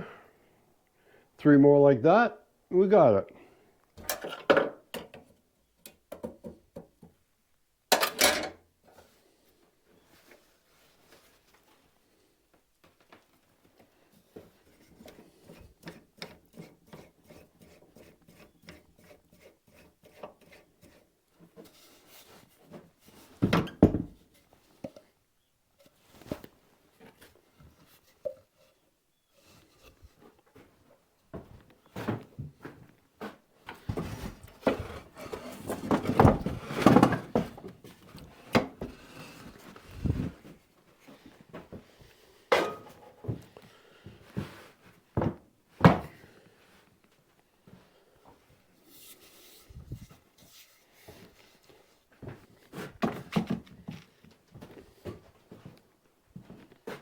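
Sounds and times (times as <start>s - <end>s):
wood scraping: 14.3s - 25.0s, 33.7s - 40.6s.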